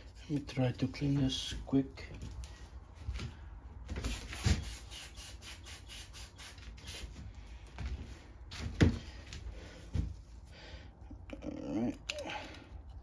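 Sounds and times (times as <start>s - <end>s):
quick rubbing strokes: 4.0s - 7.2s.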